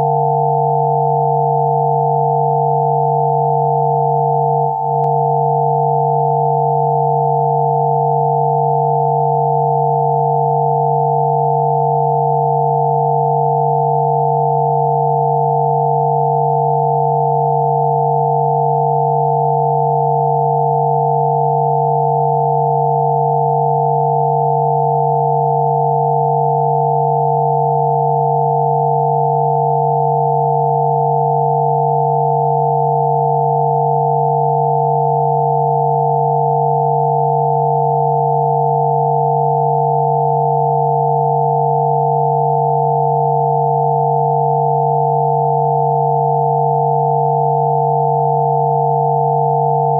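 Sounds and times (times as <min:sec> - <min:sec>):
low electronic hum: 0:00.0 - 0:03.0
high pure sine tones: 0:00.0 - 0:49.9.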